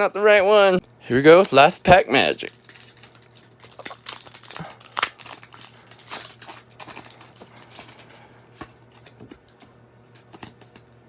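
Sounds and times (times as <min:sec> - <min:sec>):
foil wrapper crinkling and tearing: 0:02.1 - 0:09.6.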